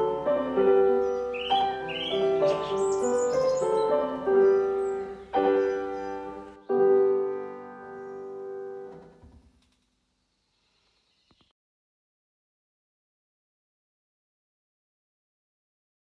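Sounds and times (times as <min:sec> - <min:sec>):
slow piano chords: 0:00.0 - 0:09.2.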